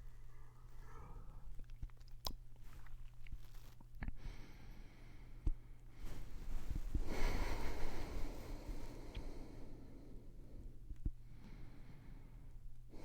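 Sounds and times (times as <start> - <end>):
soft rustling of pillow: 5.9 - 9.1.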